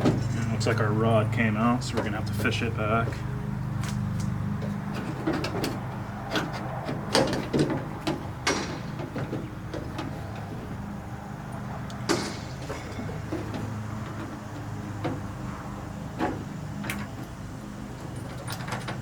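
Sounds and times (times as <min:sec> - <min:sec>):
metal parts clicking and clunking: 0:04.6 - 0:10.7, 0:11.9 - 0:15.6, 0:18.0 - 0:19.0.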